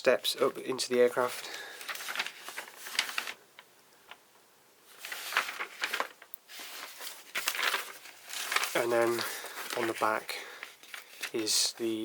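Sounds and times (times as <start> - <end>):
paper rustling and crinkling: 0.3 - 3.4, 4.9 - 12.0.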